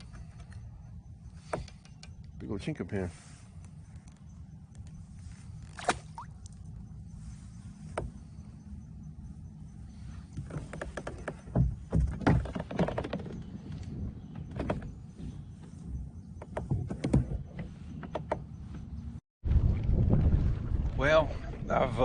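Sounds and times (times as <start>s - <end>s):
wind rumble on microphone: 6.3s - 22.0s.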